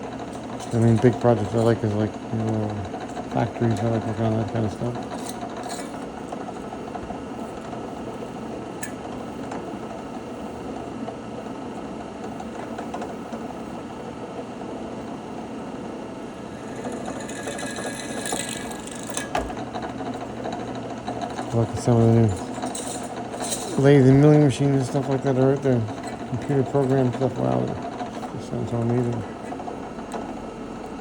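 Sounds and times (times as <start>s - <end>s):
small power tool grinding: 0.0s - 6.8s, 16.2s - 31.0s.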